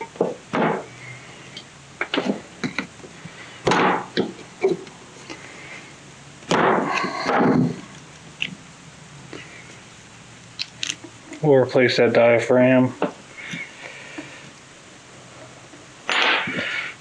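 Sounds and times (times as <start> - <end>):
small metal parts clicking: 10.5 - 11.1.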